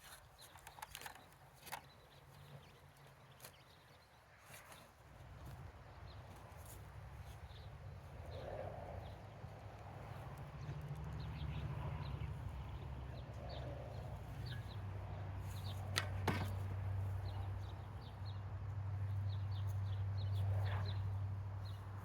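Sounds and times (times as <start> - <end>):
wind rumble on microphone: 5.3 - 22.0.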